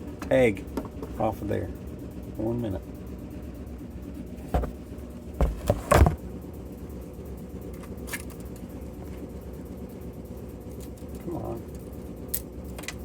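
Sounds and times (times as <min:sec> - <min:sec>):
steady low hum: 0:00.0 - 0:13.0
handling knocks and clicks: 0:04.5 - 0:04.8, 0:05.4 - 0:06.2.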